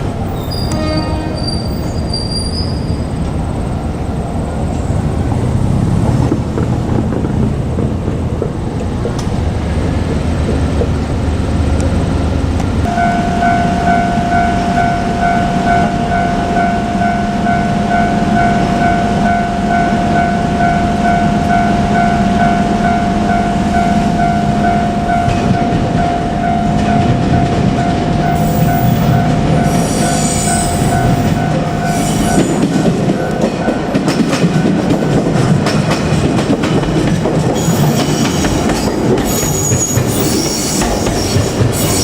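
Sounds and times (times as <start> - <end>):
train rumbling by: 0.0 - 42.0
level crossing bell clanging: 12.9 - 35.7.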